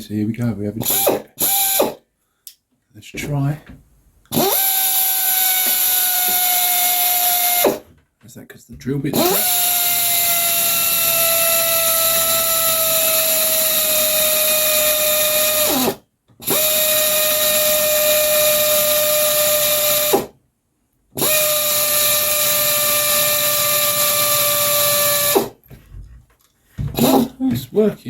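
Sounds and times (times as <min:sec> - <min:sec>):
pneumatic drill whine: 0:04.3 - 0:07.8, 0:09.2 - 0:20.4, 0:21.2 - 0:25.6, 0:27.0 - 0:27.3.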